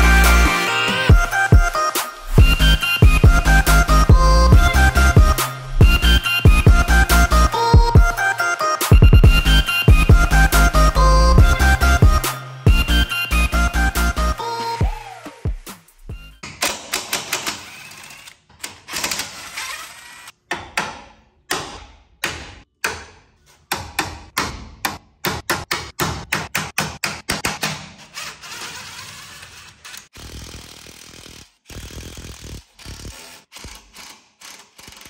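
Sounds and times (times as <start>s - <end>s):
hand tools clicking and knocking: 16.4s - 19.5s, 32.8s - 35.0s.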